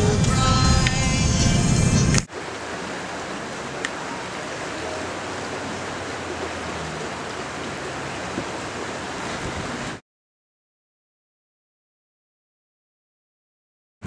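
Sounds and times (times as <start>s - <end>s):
river water rushing: 0.0s - 10.0s.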